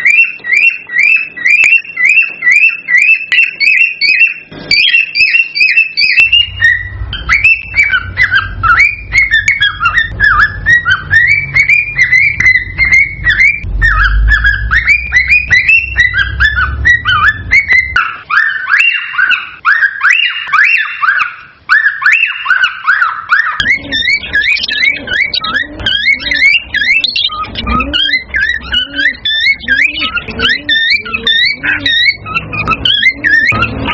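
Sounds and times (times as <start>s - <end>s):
cockatiels whistling and chirping: 0.0s - 33.9s
low rumble: 10.2s - 18.0s.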